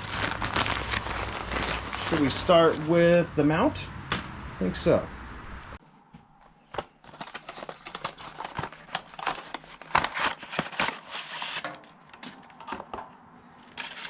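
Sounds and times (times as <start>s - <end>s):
plastic packaging crinkling: 0.0s - 3.0s, 6.7s - 12.9s.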